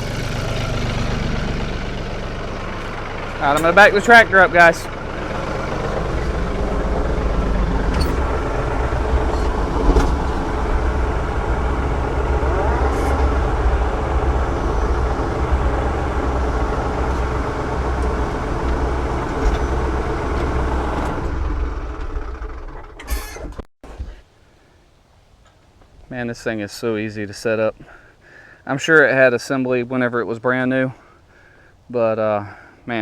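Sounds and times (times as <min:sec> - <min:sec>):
tractor engine running: 0:00.0 - 0:24.0.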